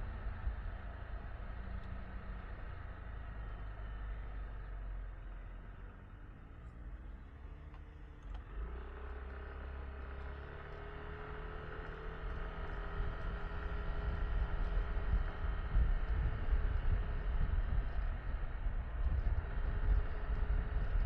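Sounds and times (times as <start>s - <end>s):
scooter engine running: 9.5s - 21.0s.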